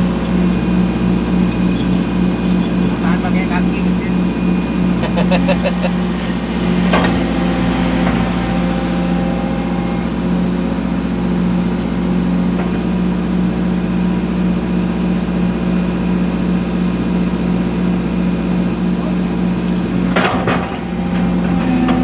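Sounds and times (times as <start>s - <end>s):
excavator diesel engine running: 0.0s - 22.0s
metallic clank: 20.0s - 22.0s.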